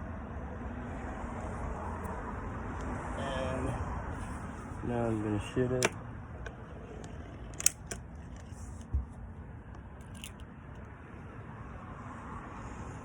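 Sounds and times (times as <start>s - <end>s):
air rifle mechanical clicks: 5.8s - 8.9s.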